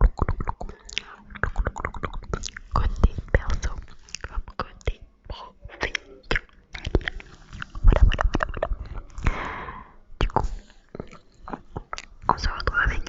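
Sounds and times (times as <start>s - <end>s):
wet lip and tongue clicks: 0.0s - 5.0s, 5.8s - 9.4s, 10.2s - 12.9s
breathy hiss: 9.2s - 10.8s.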